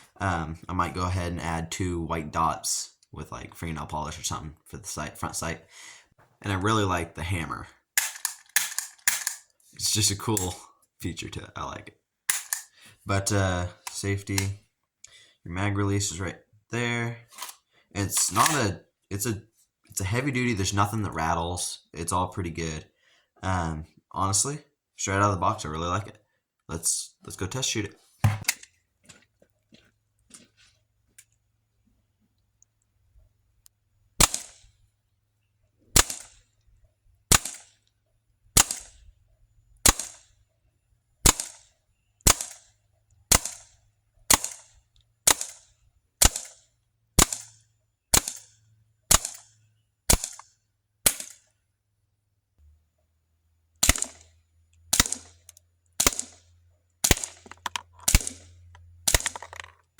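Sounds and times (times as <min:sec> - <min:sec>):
airsoft pistol shots: 0:08.0 - 0:09.4, 0:12.3 - 0:12.6, 0:18.2 - 0:18.7, 0:34.2 - 0:34.6, 0:36.0 - 0:36.3, 0:37.3 - 0:37.6, 0:38.6 - 0:38.9, 0:39.9 - 0:40.2, 0:42.3 - 0:42.6, 0:43.3 - 0:43.6, 0:45.3 - 0:45.6, 0:46.2 - 0:46.5, 0:47.2 - 0:47.5, 0:48.2 - 0:48.4, 0:49.1 - 0:49.4, 0:50.1 - 0:50.4, 0:53.8 - 0:54.2, 0:54.9 - 0:55.3, 0:56.0 - 0:56.4, 0:57.0 - 0:58.4, 0:59.1 - 0:59.5.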